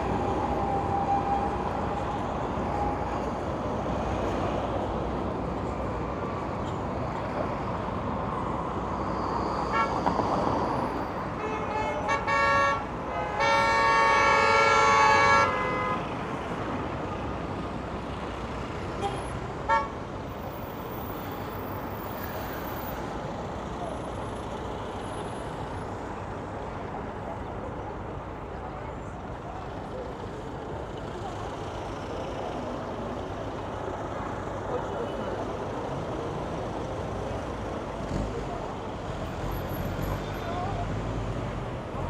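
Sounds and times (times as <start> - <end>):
city traffic noise: 0.0 - 42.0
vehicle horn tooting: 11.4 - 16.0, 19.0 - 20.0.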